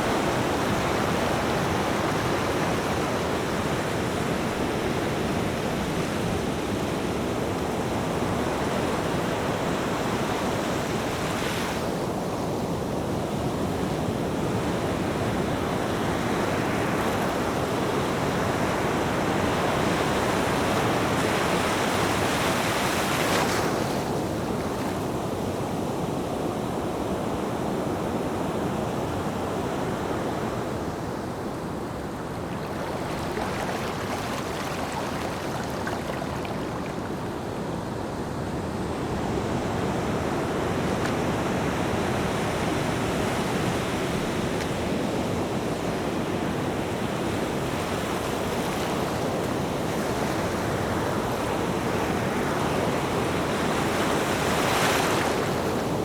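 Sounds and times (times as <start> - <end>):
ocean waves breaking: 29.8 - 56.0.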